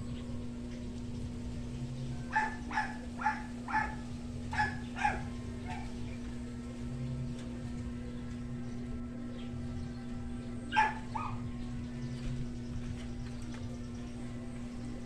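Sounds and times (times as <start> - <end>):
steady low hum: 0.0 - 15.0
dog barking: 2.3 - 6.0, 10.7 - 11.5.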